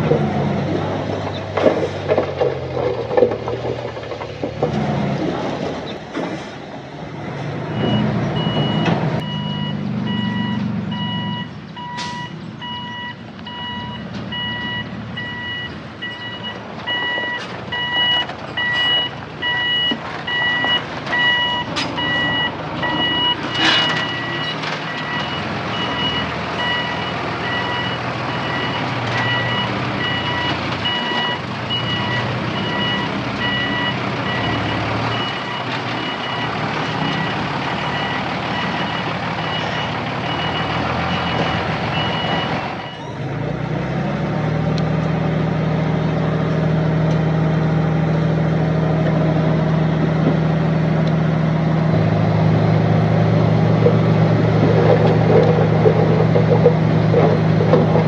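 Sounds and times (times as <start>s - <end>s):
diesel engine running: 0.0s - 58.0s
reversing alarm beeping: 7.7s - 43.2s.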